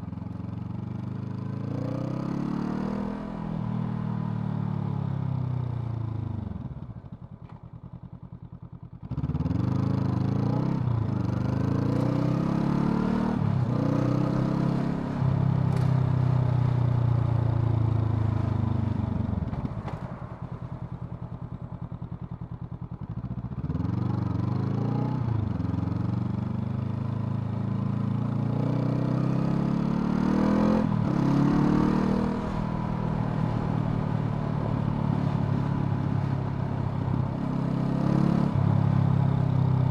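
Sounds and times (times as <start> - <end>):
motorcycle engine revving through gears: 9.0 - 16.0, 23.4 - 39.6.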